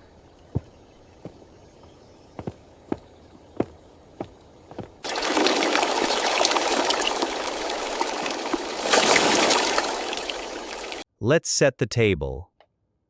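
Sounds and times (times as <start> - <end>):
light footsteps: 0.5 - 5.6
water gushing and splashing: 5.0 - 11.0.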